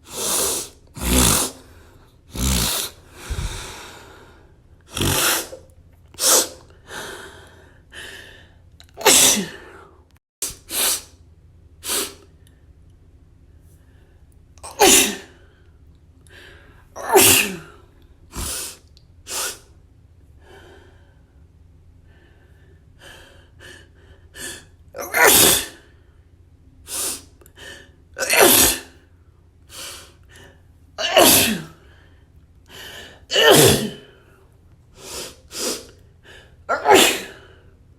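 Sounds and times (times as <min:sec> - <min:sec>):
person sneezing: 0:00.0 - 0:01.6, 0:02.3 - 0:03.8, 0:04.9 - 0:06.7, 0:08.9 - 0:09.8, 0:14.6 - 0:15.4, 0:17.0 - 0:19.7, 0:25.0 - 0:25.8, 0:28.2 - 0:29.0, 0:31.0 - 0:31.8, 0:33.3 - 0:34.1, 0:36.7 - 0:37.5
person sniffing: 0:00.0 - 0:04.0, 0:04.9 - 0:05.6, 0:06.2 - 0:06.7, 0:10.4 - 0:11.1, 0:11.8 - 0:12.2, 0:18.3 - 0:19.6, 0:35.0 - 0:36.0
gasping in-breath: 0:00.0 - 0:05.6, 0:31.8 - 0:33.2.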